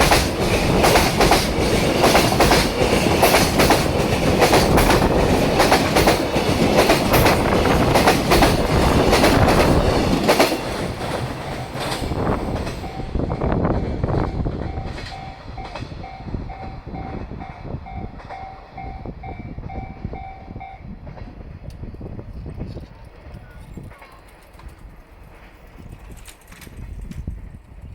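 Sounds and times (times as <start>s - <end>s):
train wheels clacking over rail joints: 0.0s - 13.1s
level-crossing alarm ringing: 11.4s - 13.4s.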